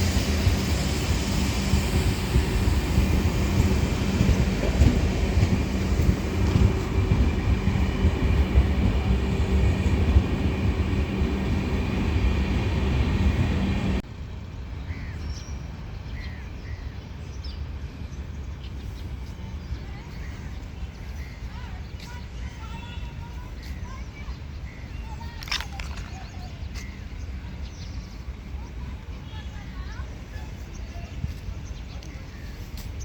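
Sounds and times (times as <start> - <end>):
train wheels rumbling on rail: 0.0 - 14.8
electric locomotive hum: 0.0 - 15.0
birds chirping: 15.0 - 33.0.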